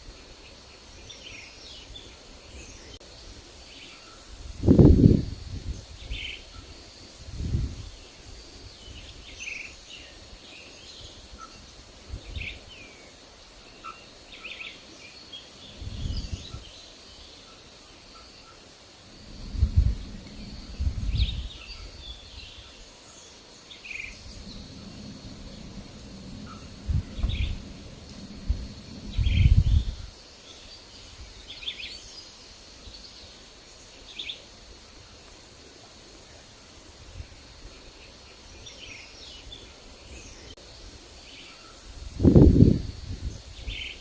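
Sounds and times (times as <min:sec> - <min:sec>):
high insect hum: 0:00.0 - 0:44.0
songbirds chirping: 0:00.0 - 0:44.0
wind buffeting microphone: 0:04.4 - 0:09.4, 0:11.9 - 0:12.7, 0:15.6 - 0:16.7, 0:19.1 - 0:22.7, 0:24.0 - 0:30.2, 0:41.9 - 0:44.0.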